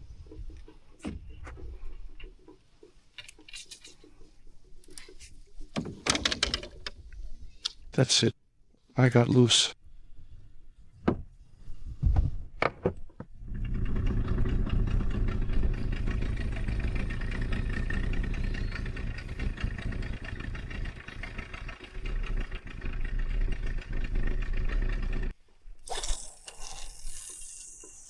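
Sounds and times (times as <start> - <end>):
engine running: 13.4 - 25.3.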